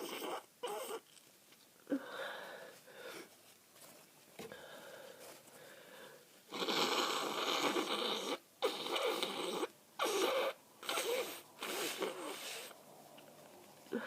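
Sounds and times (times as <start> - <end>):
wet nose blowing: 6.5 - 12.8.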